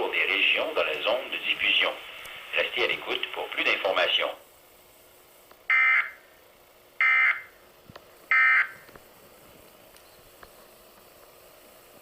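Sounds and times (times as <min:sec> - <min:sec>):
short electronic alert bursts: 0:07.0 - 0:07.5, 0:08.3 - 0:08.7.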